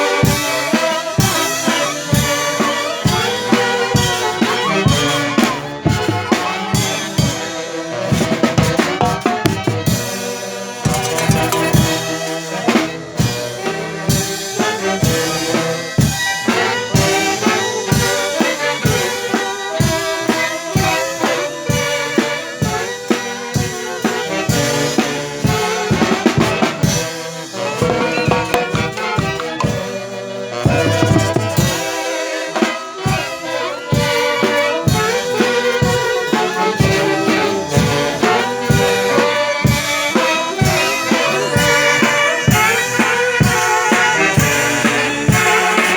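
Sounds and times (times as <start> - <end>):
band music with horns: 0.0 - 45.9
drum kit beat: 8.2 - 10.1, 10.7 - 12.3, 25.8 - 32.1.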